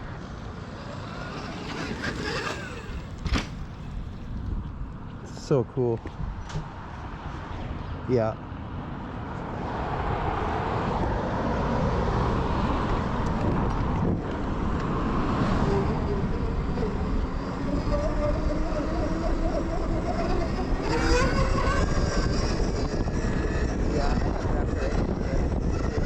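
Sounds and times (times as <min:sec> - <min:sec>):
electric motor whine: 0:00.0 - 0:05.3, 0:10.8 - 0:26.0
wind rush on microphone: 0:00.0 - 0:26.0.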